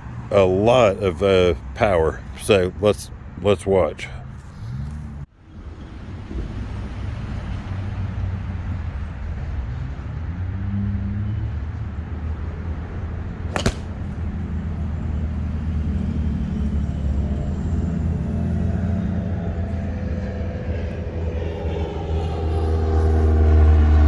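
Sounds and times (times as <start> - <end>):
low engine drone: 13.2 - 24.0
golf club striking ball: 13.5 - 15.0.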